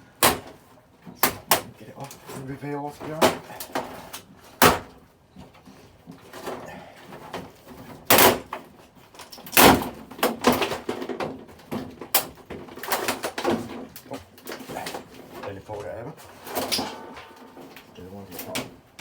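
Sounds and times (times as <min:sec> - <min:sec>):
loud plastic snaps: 0:00.2 - 0:00.6, 0:01.2 - 0:02.2, 0:08.0 - 0:15.1.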